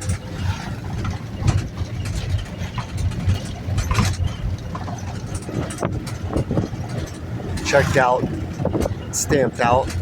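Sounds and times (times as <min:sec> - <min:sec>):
small knocks and rattles: 0:00.0 - 0:07.8
engine and road drone: 0:00.0 - 0:10.0.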